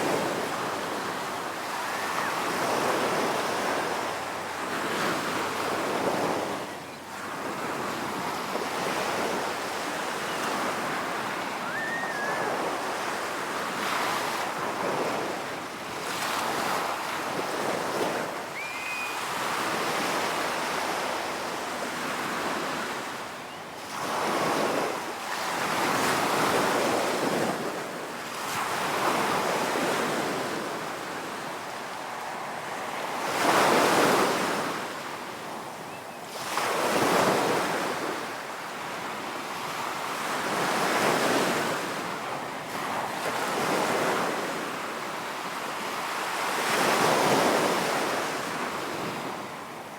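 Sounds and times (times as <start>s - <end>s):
ocean surf breaking: 7.6s - 15.4s.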